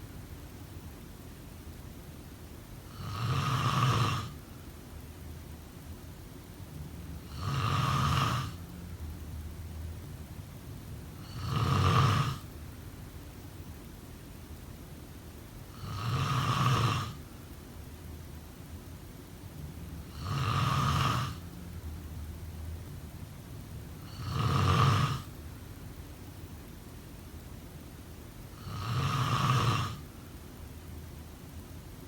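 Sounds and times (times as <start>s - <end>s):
person snoring: 2.9s - 4.4s, 7.3s - 8.6s, 11.2s - 12.4s, 15.7s - 17.2s, 20.1s - 21.4s, 24.0s - 25.3s, 28.6s - 30.0s.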